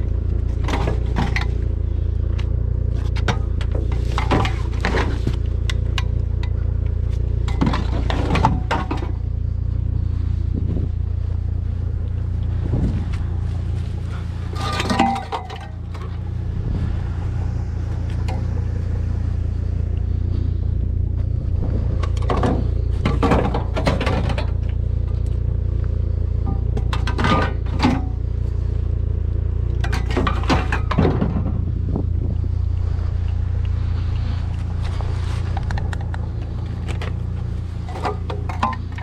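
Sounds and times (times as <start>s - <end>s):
vehicle engine and road rumble: 0.0s - 39.0s
short rattling scrapes: 12.8s - 19.1s.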